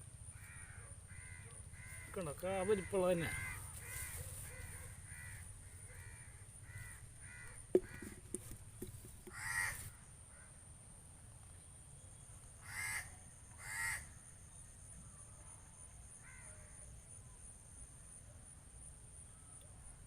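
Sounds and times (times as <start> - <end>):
crows cawing: 0.3 - 10.5, 12.6 - 14.2, 16.2 - 16.5.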